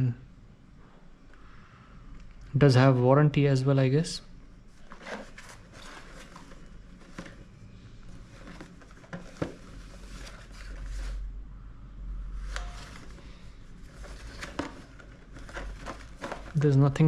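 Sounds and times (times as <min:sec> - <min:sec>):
soft rustling: 0:08.1 - 0:11.2.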